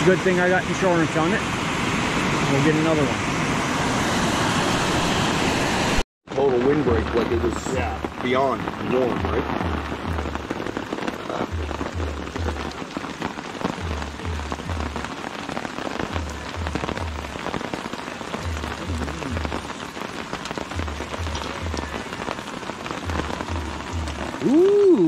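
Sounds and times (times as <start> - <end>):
crackling hiss: 0.0 - 25.0
background music with bass pulses: 7.0 - 19.8, 20.4 - 24.5.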